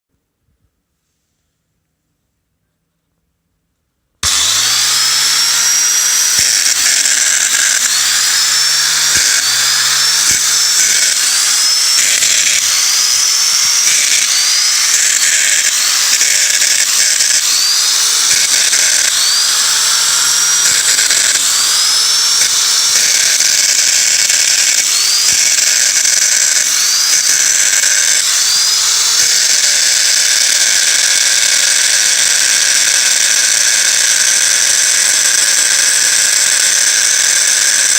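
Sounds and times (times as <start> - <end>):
angle grinder running: 4.2 - 37.9
rising whine: 4.2 - 37.9.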